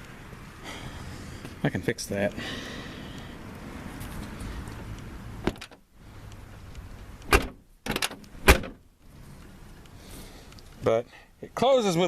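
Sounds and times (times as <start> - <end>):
truck door slamming: 5.4 - 5.8, 7.3 - 8.8
door latch clicks: 7.2 - 8.8.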